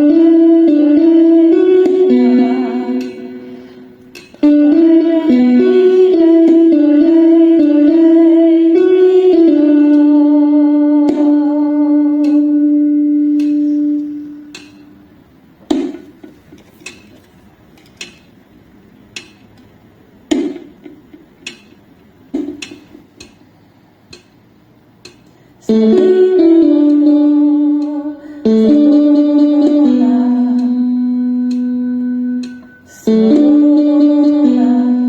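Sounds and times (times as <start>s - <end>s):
woman singing: 0.0s - 3.6s, 4.4s - 14.2s, 25.7s - 31.6s, 32.9s - 35.0s
plucked guitar-like notes: 0.0s - 15.1s, 25.7s - 35.0s.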